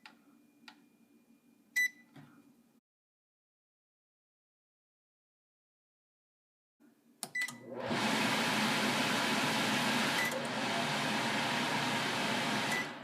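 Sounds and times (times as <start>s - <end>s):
microwave fan whooshing: 7.6s - 13.0s
microwave beep: 10.1s - 10.5s, 12.5s - 13.0s.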